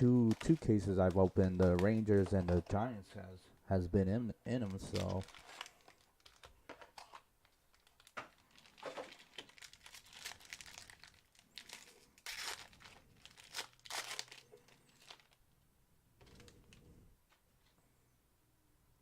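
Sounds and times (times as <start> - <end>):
plastic wrapping crinkling and tearing: 0.0 - 2.5, 4.5 - 15.4.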